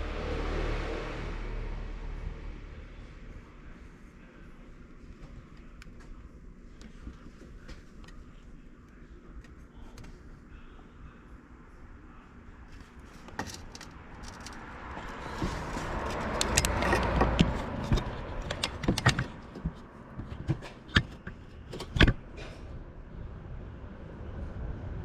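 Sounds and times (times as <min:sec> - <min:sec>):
vehicle passing: 0:00.0 - 0:03.4, 0:13.8 - 0:20.2
metallic clinks and knocks: 0:13.2 - 0:22.2.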